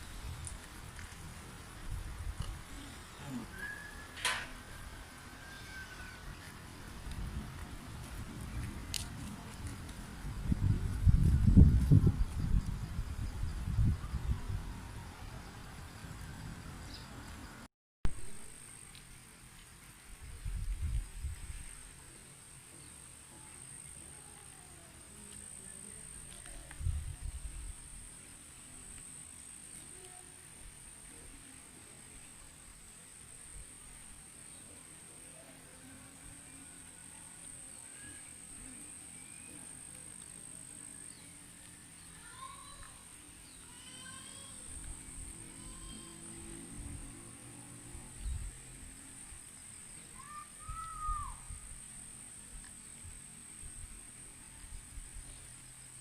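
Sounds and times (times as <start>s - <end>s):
insects trilling: 2.6s - 7.0s, 27.5s - 56.0s
bird call: 2.9s - 4.4s.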